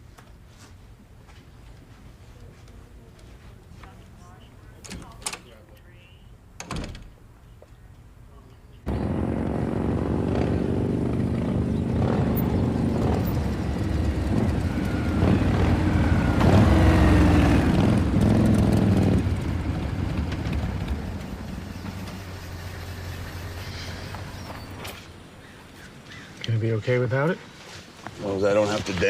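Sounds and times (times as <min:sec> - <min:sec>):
motorcycle engines revving: 0:08.9 - 0:25.2.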